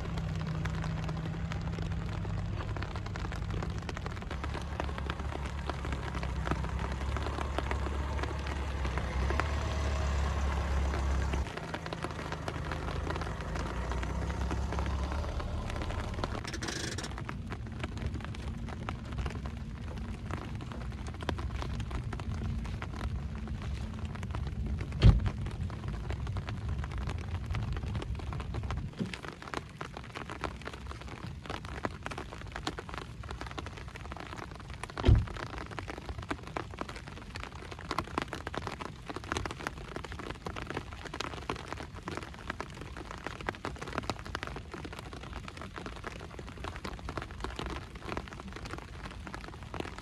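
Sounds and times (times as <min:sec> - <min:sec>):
low rumble: 0:00.0 - 0:28.9
steady rain falling: 0:00.0 - 0:50.0.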